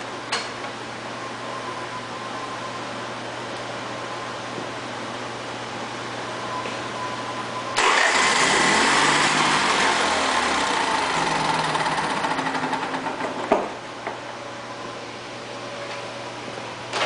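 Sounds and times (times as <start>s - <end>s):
generator engine running unevenly: 7.8s - 14.5s.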